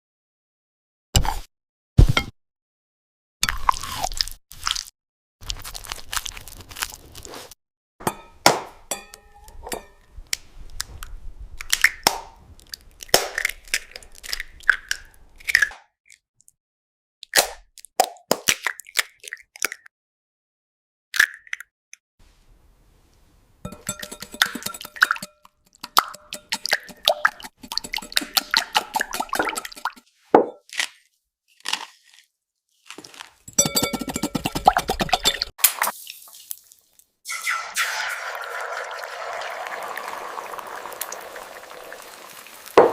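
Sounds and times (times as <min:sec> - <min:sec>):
crisp crunches and squishy bites: 0:03.6 - 0:07.6, 0:30.6 - 0:33.5.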